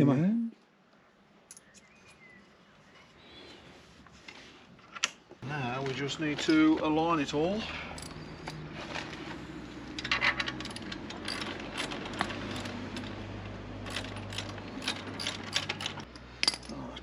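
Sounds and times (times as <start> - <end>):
metal exhaust parts clinking: 5.7 - 17.0.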